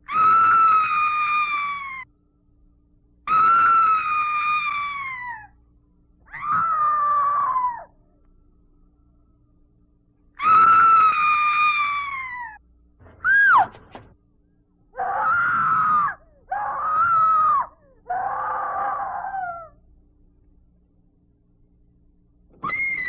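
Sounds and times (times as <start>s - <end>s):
high-pitched screams: 0.0s - 2.1s, 3.3s - 5.6s, 6.3s - 7.9s, 10.4s - 12.6s, 13.2s - 13.8s, 15.0s - 19.8s, 22.6s - 23.0s
faint steady hum: 0.0s - 23.0s.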